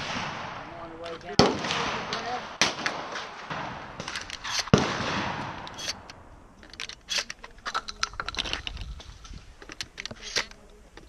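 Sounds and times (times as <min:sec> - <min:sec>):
gunshot: 0:00.0 - 0:05.8.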